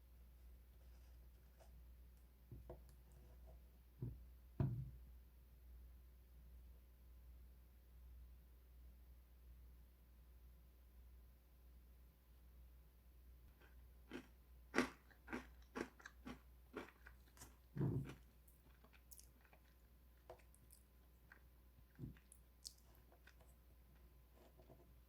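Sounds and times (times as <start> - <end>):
crunchy bread sticks being chewed: 13.5 - 25.0.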